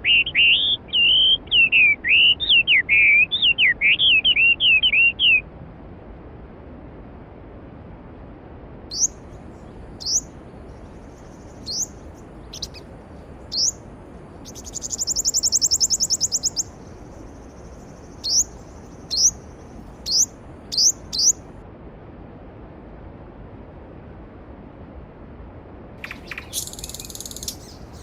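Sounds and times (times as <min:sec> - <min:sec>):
songbird chirping and trilling: 0:00.0 - 0:05.4, 0:08.9 - 0:21.5, 0:26.0 - 0:28.0.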